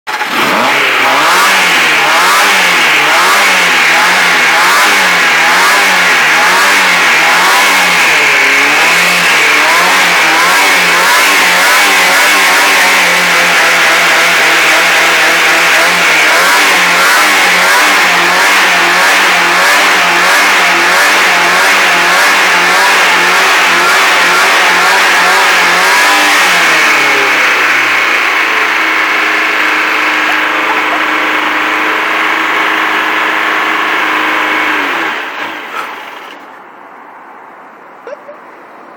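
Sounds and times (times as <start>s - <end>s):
car engine revving: 0.1s - 36.6s
car engine idling: 0.1s - 38.9s.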